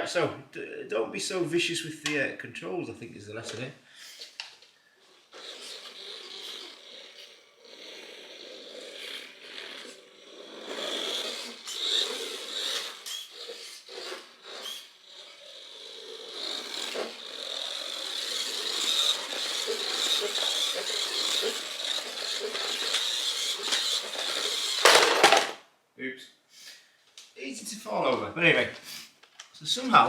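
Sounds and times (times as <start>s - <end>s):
toy truck electric motor whirring: 4.0s - 25.6s.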